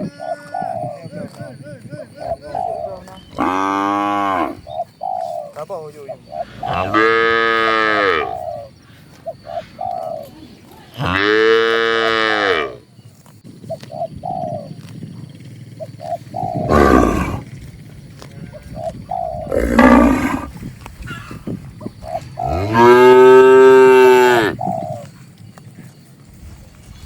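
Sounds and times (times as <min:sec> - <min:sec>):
birds calling: 0:00.0 - 0:27.0
cattle mooing: 0:03.3 - 0:04.6, 0:06.4 - 0:08.4, 0:11.0 - 0:12.8, 0:16.6 - 0:17.5, 0:19.4 - 0:20.5, 0:22.4 - 0:24.6.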